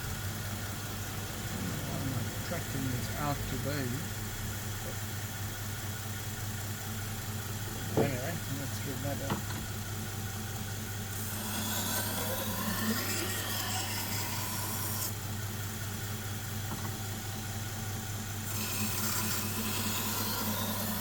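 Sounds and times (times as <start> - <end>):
belt grinder motor hum: 7.8 - 15.2, 18.4 - 21.0
knife blade grinding on belt: 11.2 - 15.1, 18.5 - 21.0.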